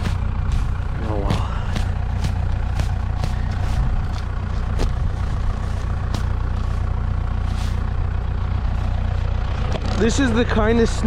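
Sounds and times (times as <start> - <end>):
tractor engine idling: 0.0 - 11.0.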